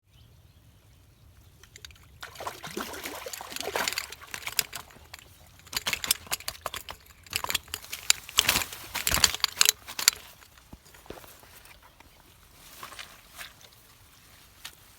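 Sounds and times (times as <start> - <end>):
pond water splashing: 1.6 - 10.4.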